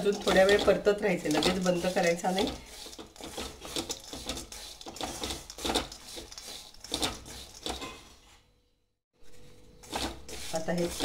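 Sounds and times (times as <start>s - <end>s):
spatula stirring in a pan: 0.0s - 8.3s, 9.4s - 11.0s.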